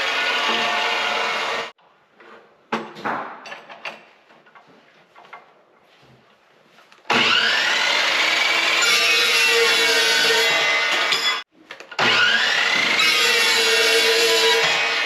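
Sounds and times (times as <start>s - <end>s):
chop saw cutting steel: 0.0s - 1.8s, 7.1s - 15.0s.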